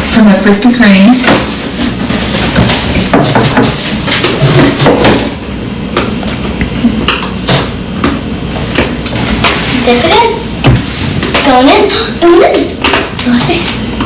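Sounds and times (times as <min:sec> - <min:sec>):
objects clattering on a tabletop: 0:02.1 - 0:05.4.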